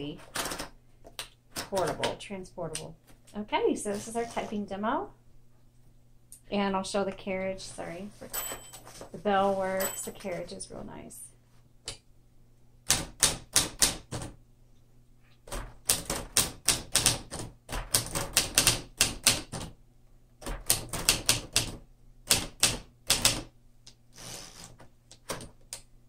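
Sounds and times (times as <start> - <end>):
manual typewriter typing: 0.2 - 0.7, 12.9 - 14.4, 15.4 - 19.7, 20.4 - 23.5.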